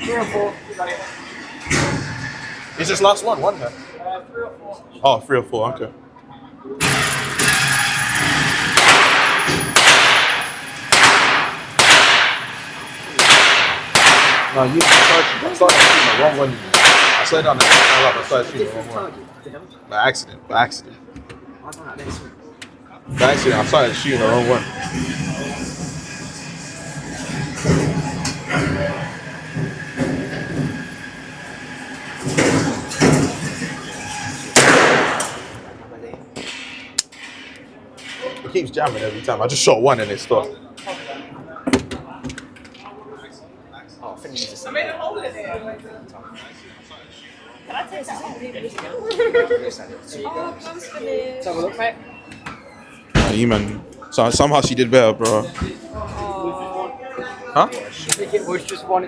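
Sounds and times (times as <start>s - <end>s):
rifle gunshots with echo: 8.8s - 12.6s, 13.2s - 18.3s, 34.6s - 35.4s.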